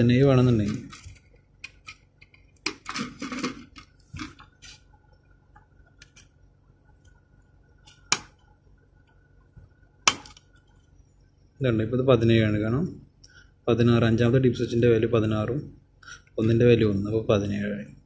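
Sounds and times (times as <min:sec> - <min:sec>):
handling noises: 0:00.4 - 0:04.9.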